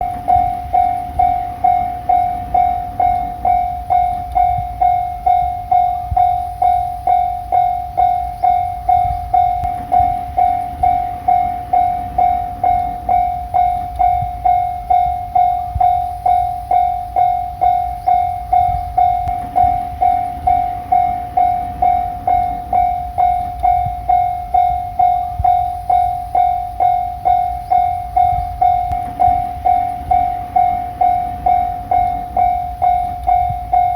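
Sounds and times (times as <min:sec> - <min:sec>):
level crossing warning bell: 0:00.0 - 0:33.9.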